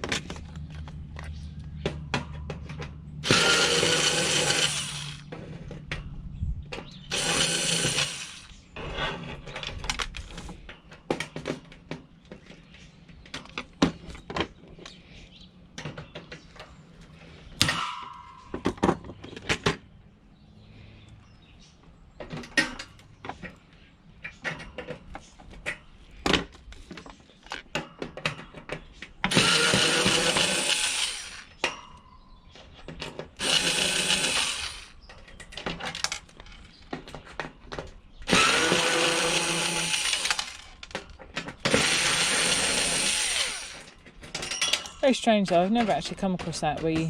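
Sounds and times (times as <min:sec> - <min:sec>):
power drill running: 0:03.2 - 0:05.3, 0:07.1 - 0:08.6, 0:29.3 - 0:31.6, 0:33.4 - 0:35.0, 0:38.3 - 0:41.0, 0:41.6 - 0:44.0.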